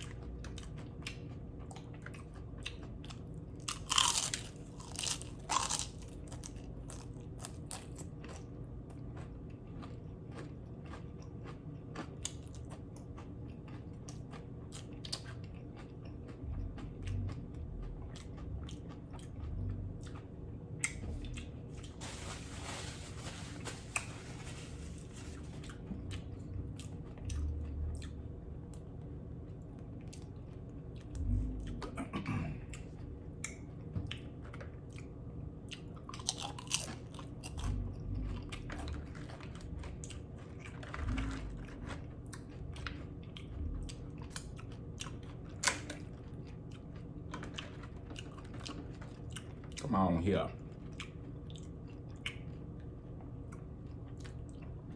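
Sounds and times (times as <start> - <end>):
wet chewing: 0.0 - 23.0, 35.7 - 49.8
tortilla chips crunching: 0.0 - 27.5, 35.8 - 49.9.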